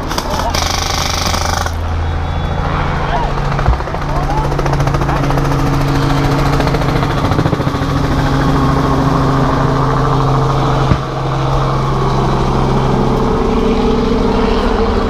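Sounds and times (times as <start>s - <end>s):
vehicle engine running: 0.0s - 15.0s.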